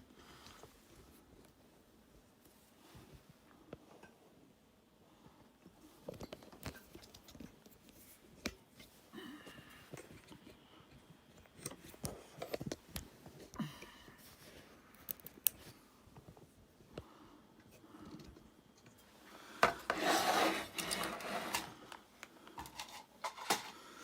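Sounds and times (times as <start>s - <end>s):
squeaky scrape: 19.9s - 21.7s.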